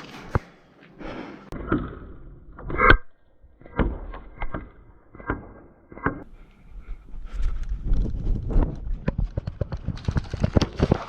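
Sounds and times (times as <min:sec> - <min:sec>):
sharp knocks and clicks: 0:08.9 - 0:11.0.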